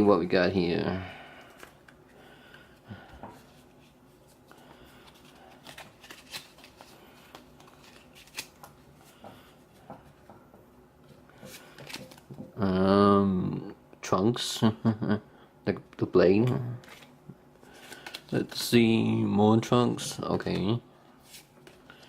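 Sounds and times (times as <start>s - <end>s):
trading cards clicking and rustling: 1.4s - 9.4s, 11.4s - 12.6s, 17.7s - 18.7s.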